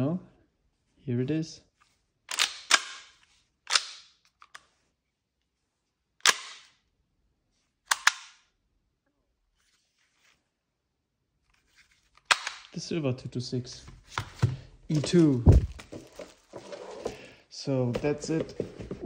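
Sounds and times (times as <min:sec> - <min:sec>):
pistol action clacking: 0:02.3 - 0:03.1, 0:03.7 - 0:04.6, 0:07.9 - 0:08.4, 0:12.3 - 0:12.7.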